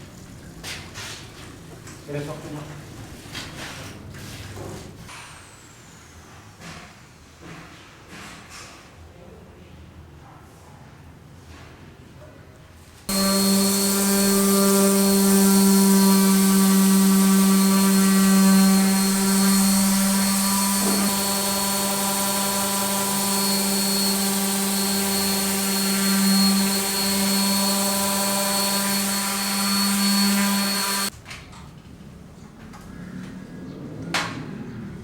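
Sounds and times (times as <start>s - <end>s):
power tool motor whining: 13.1s - 31.1s.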